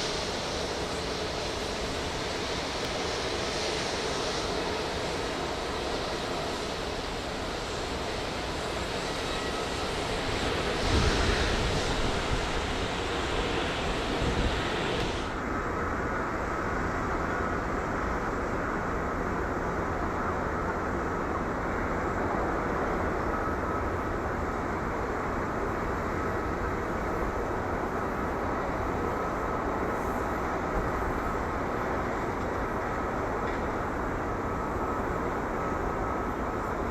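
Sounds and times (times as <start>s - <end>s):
jet engines: 0.0s - 36.9s.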